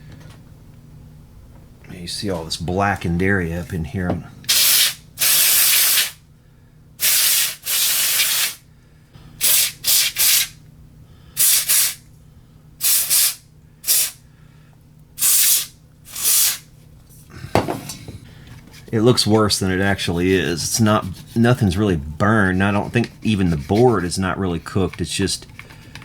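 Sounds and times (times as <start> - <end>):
aerosol can hissing bursts: 4.5 - 6.2, 7.0 - 8.6, 9.4 - 10.6, 11.4 - 12.0, 12.8 - 14.2, 15.2 - 16.7.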